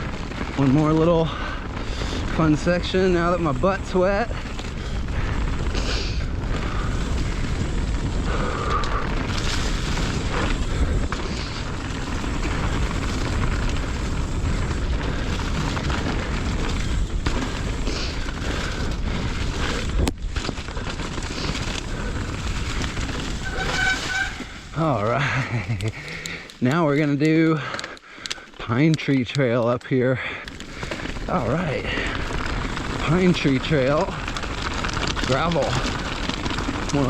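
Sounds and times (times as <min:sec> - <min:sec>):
tyre rumble on dirt: 0:00.0 - 0:25.7, 0:30.5 - 0:37.0.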